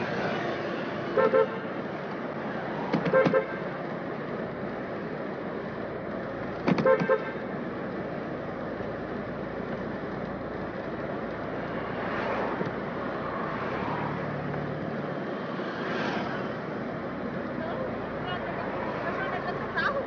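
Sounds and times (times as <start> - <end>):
street and traffic noise: 0.0 - 20.0
car horn toots: 1.1 - 1.7, 3.0 - 3.7, 6.7 - 7.5.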